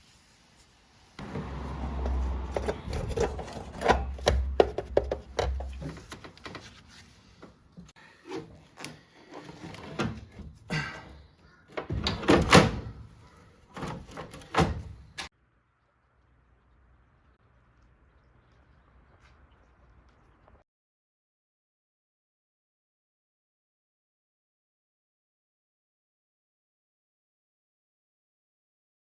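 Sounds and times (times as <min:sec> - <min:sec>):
knocks and clatter: 0:01.2 - 0:06.4.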